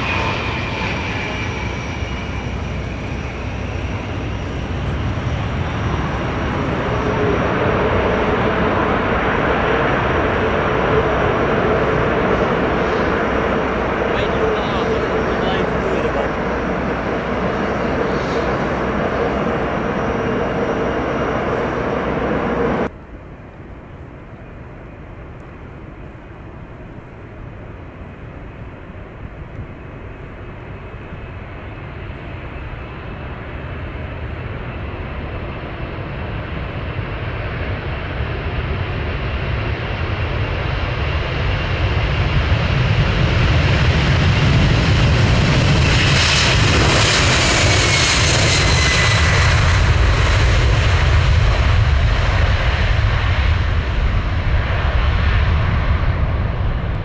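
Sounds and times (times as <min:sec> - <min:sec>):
high jet whine falling in pitch: 0:00.0 - 0:22.9
jet engine roar: 0:00.0 - 0:57.0.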